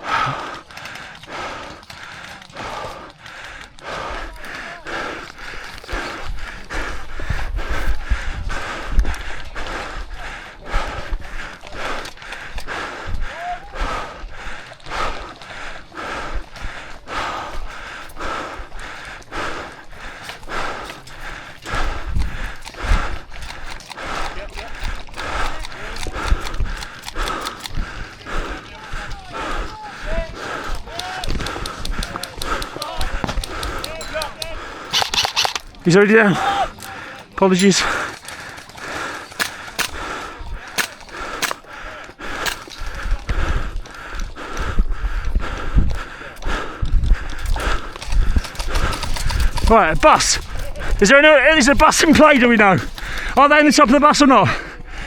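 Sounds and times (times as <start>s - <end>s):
person breathing hard: 0.0s - 55.0s.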